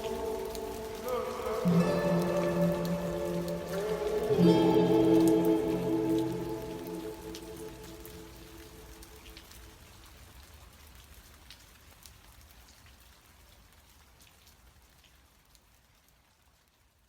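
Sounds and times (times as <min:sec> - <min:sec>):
rain hissing: 0:00.0 - 0:10.0.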